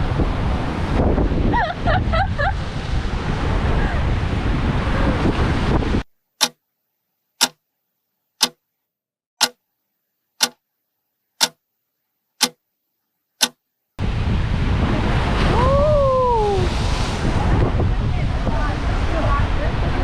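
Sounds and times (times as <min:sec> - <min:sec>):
wind: 0:00.0 - 0:08.8, 0:09.4 - 0:20.0
clock ticking: 0:06.4 - 0:06.6, 0:07.4 - 0:07.6, 0:08.4 - 0:08.6, 0:09.4 - 0:09.7, 0:10.4 - 0:10.6, 0:11.4 - 0:11.6, 0:12.4 - 0:12.6, 0:13.4 - 0:13.6
surf: 0:14.0 - 0:20.0.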